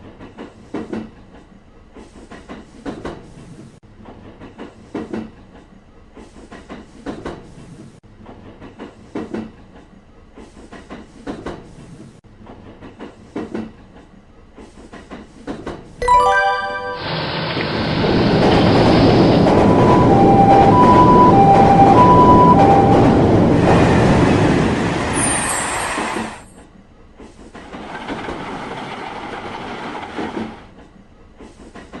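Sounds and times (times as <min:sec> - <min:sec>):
crossing bell two-note ringing: 0:16.0 - 0:17.5
train rushing rumble: 0:17.0 - 0:26.6, 0:27.2 - 0:30.8.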